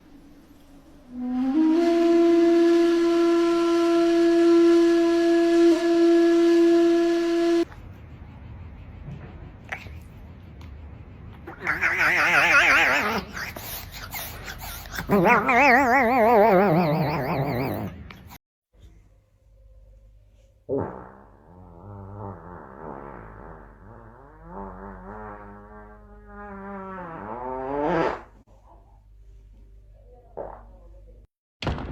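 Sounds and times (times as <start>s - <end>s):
long steady wind instrument note: 1.1s - 7.6s
wavering comedic tone: 11.5s - 18.0s.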